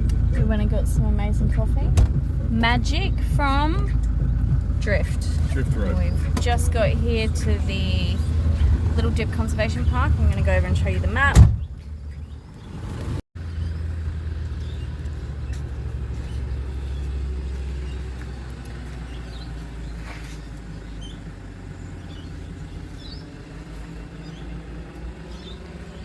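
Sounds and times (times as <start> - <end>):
vehicle engine rumbling: 0.0 - 26.0.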